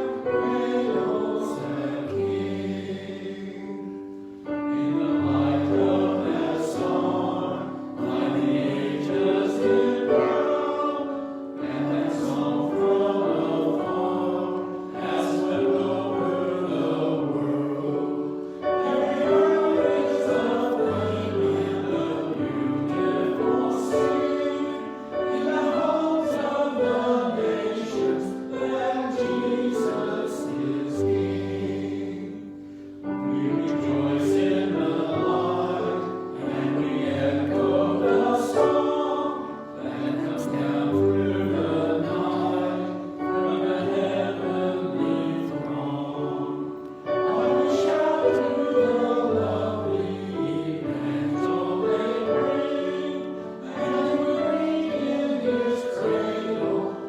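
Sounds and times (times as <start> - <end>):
choir singing: 0.0 - 57.0.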